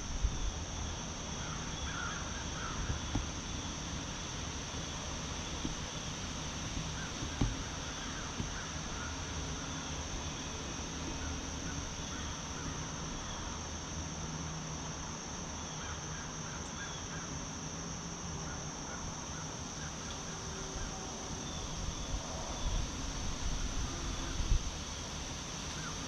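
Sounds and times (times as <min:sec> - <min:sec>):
crows cawing: 0:01.4 - 0:02.8.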